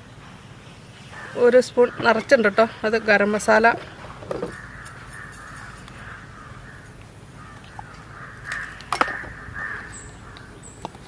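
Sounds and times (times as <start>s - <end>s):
crows cawing: 4.3s - 10.6s.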